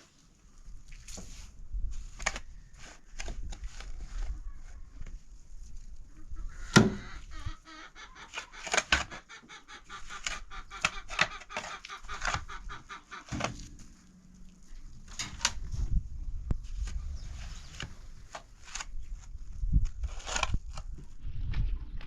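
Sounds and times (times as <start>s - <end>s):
chickens clucking: 6.0s - 14.1s.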